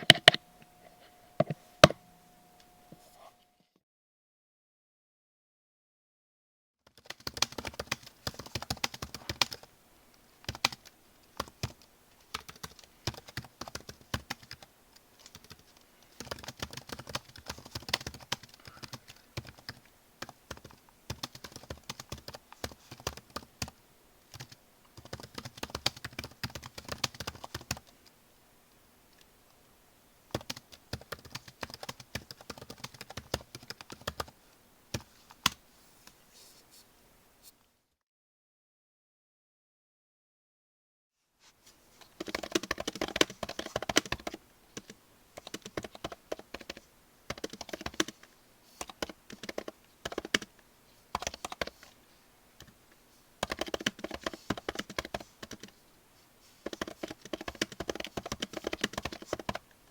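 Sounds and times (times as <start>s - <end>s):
typing on computer keyboard: 6.9s - 9.7s, 10.4s - 27.9s, 30.3s - 34.3s, 42.1s - 50.5s, 51.1s - 51.9s, 53.4s - 55.7s, 56.6s - 59.6s.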